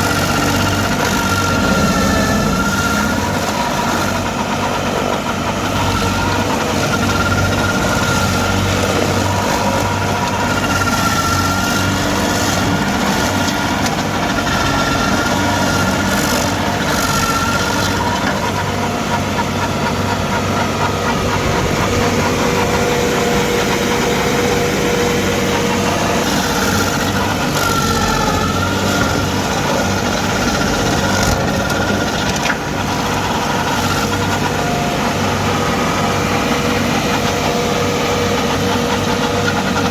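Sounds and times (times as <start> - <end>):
stump grinder engine running: 0.0 - 39.9
wavering high tones: 1.4 - 4.0.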